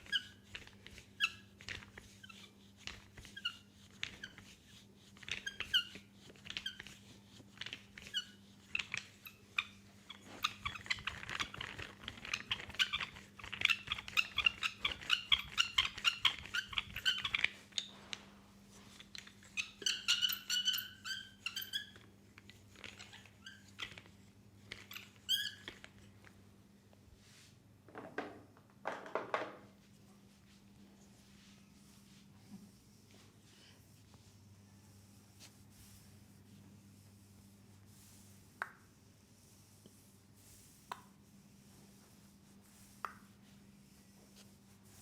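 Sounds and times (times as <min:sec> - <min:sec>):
hands rubbing oiled skin: 0:00.0 - 0:26.4, 0:29.7 - 0:45.0
faint electrical hum: 0:00.0 - 0:45.0
skin squeaks and wet clicks: 0:07.7 - 0:17.9, 0:19.2 - 0:22.1, 0:22.7 - 0:24.2, 0:24.8 - 0:26.0.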